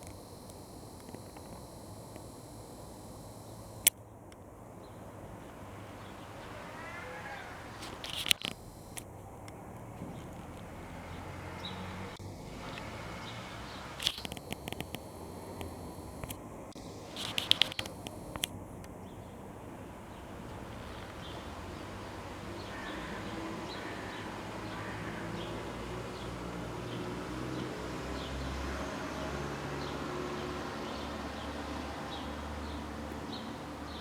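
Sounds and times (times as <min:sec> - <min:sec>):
faint high chirps: 0:00.0 - 0:03.9.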